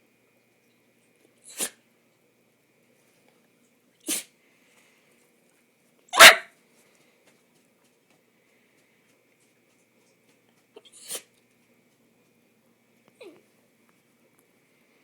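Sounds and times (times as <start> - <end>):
dog sneezing: 1.4 - 1.8, 4.0 - 4.4, 6.1 - 6.5, 10.8 - 11.3.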